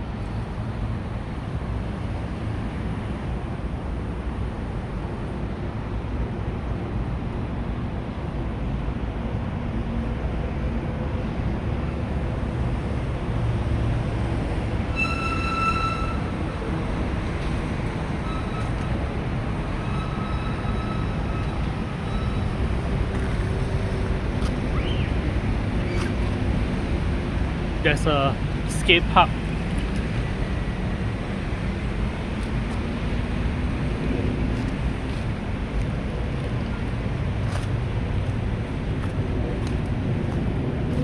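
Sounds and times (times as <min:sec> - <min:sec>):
traffic rumble: 0:00.0 - 0:41.0
short high-pitched beep: 0:15.0 - 0:16.3.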